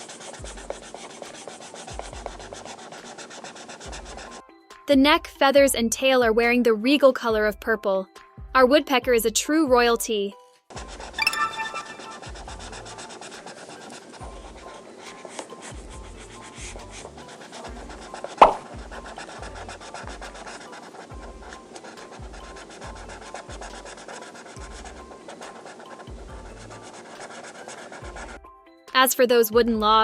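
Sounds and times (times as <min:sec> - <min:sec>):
drawing tool scratching on paper: 0:00.0 - 0:04.5, 0:10.7 - 0:28.5
soft background music: 0:00.0 - 0:30.0.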